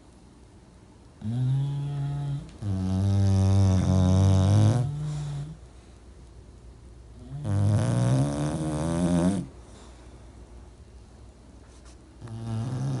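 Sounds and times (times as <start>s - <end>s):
dog snoring: 1.2s - 5.6s, 7.2s - 9.6s, 12.2s - 13.0s.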